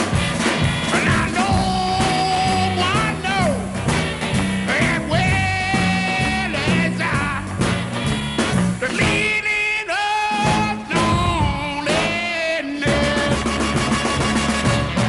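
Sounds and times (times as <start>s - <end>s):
repeating bass line: 0.0s - 9.5s, 12.9s - 15.0s
blues record playing: 0.0s - 15.0s.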